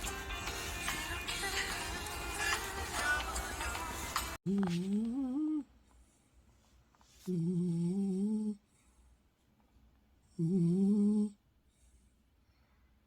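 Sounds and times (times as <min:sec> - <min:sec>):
dog snoring in humming tone: 0:07.3 - 0:08.6, 0:10.3 - 0:11.4.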